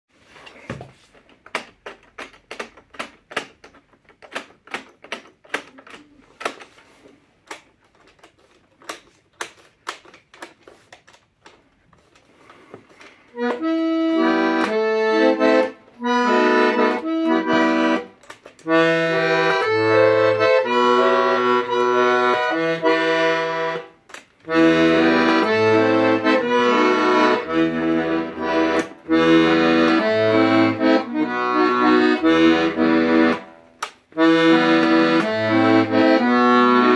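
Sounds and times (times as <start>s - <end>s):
accordion handling clicks: 1.4s - 6.8s, 7.4s - 11.6s, 12.9s - 36.9s
accordion playing chords: 13.3s - 36.9s.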